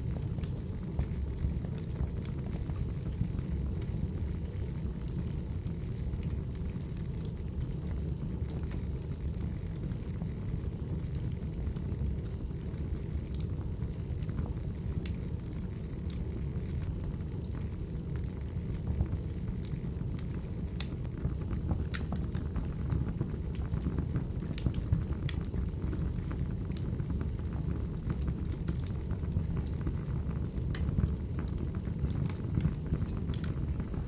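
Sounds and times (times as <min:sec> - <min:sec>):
fire pops and crackles: 0:00.0 - 0:34.0
wood fire rumbling: 0:00.0 - 0:34.0.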